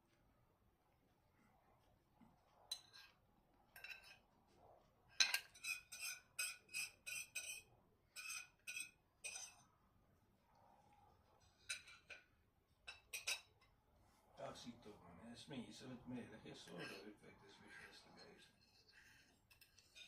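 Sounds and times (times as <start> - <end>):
cutlery clinking on a plate: 2.7 - 4.2, 5.1 - 9.7, 11.6 - 13.7, 18.1 - 20.0.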